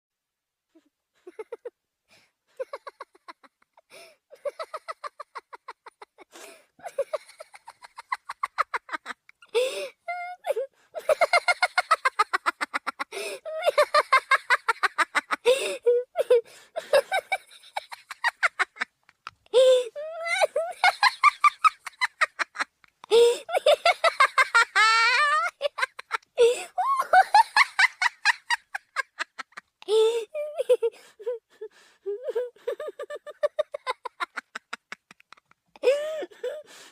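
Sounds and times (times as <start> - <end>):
high-pitched cartoon laugh: 19.6 - 22.7, 23.3 - 30.9.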